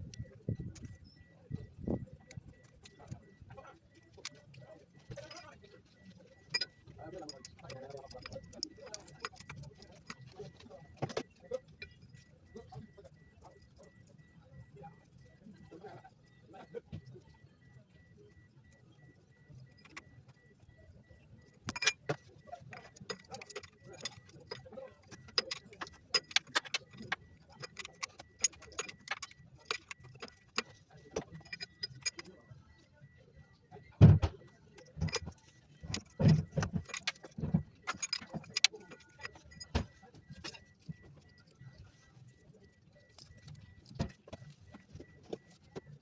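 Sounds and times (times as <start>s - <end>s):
hand tools and metal parts clinking: 5.3s - 10.3s, 21.6s - 32.3s, 34.7s - 42.0s.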